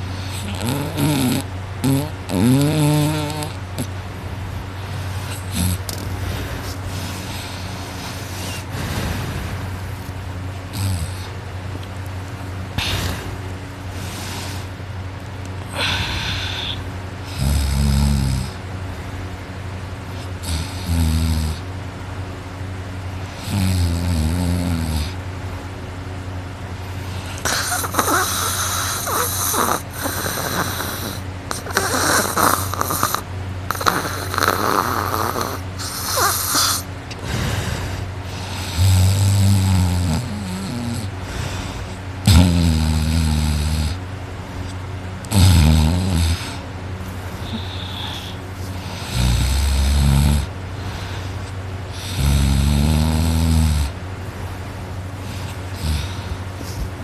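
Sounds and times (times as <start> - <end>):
person snoring loudly: 0.0 - 3.9, 5.0 - 9.8, 10.7 - 11.4, 15.7 - 18.6, 20.4 - 21.6, 23.4 - 25.2, 27.2 - 44.0, 45.2 - 46.6, 47.3 - 51.3, 51.9 - 54.0, 55.2 - 56.8
harsh hissing breaths: 0.0 - 57.0.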